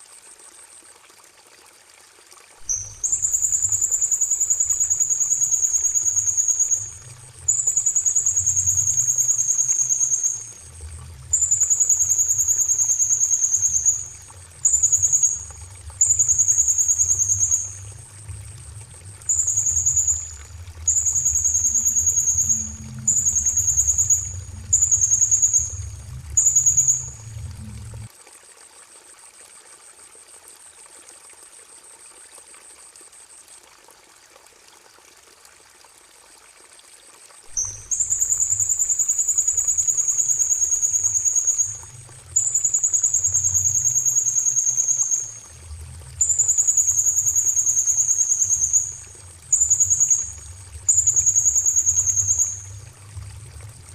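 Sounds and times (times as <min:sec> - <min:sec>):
faint steady high tone: 0:02.6 - 0:28.1, 0:37.5 - 0:53.9
songbird trilling: 0:02.7 - 0:10.6, 0:11.3 - 0:18.0, 0:19.3 - 0:27.4, 0:37.6 - 0:41.8, 0:42.4 - 0:45.4, 0:46.2 - 0:52.7.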